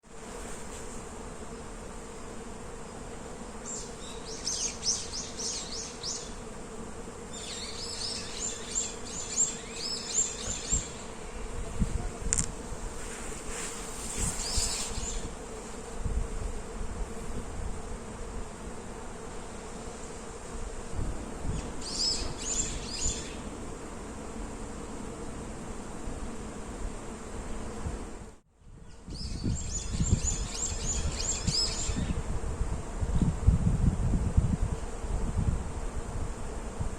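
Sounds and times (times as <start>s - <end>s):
honeybees buzzing: 0.0s - 28.4s, 29.0s - 36.9s
songbirds chirping: 3.7s - 6.5s, 7.3s - 11.6s.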